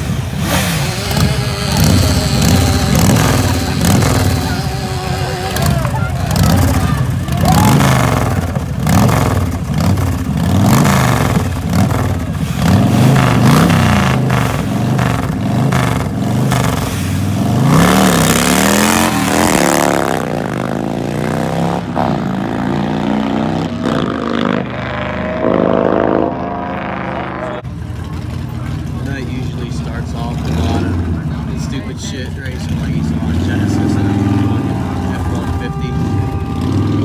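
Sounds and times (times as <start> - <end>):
car engine revving: 0.0 - 37.0
engine accelerating hard: 0.0 - 37.0.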